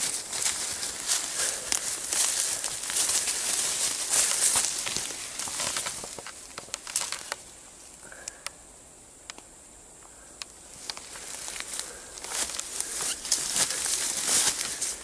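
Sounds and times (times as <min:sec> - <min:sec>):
rustling through undergrowth: 0:00.0 - 0:07.9, 0:10.6 - 0:15.0
twig snaps and clicks: 0:04.2 - 0:07.4.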